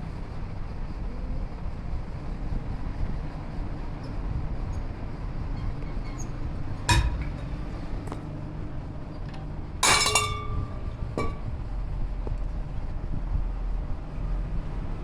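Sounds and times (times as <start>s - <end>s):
steady low hum: 6.3s - 14.2s
metal parts clinking: 9.8s - 11.4s.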